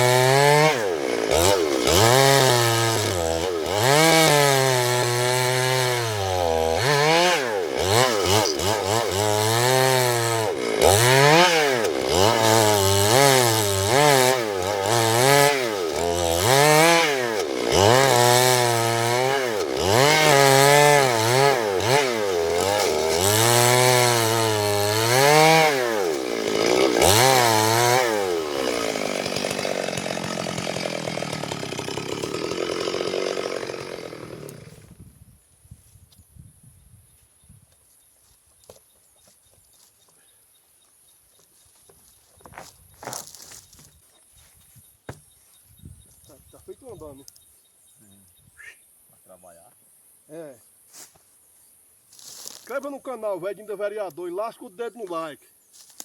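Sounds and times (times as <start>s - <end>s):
chainsaw engine revving: 0.0s - 35.0s.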